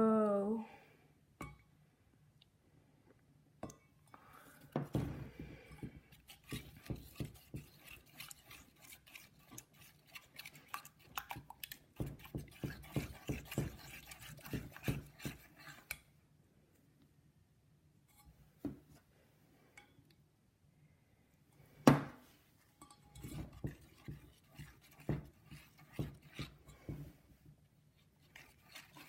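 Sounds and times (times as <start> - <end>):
spoon stirring and knocking bowl: 4.7 - 16.0, 22.8 - 27.3, 28.0 - 29.0.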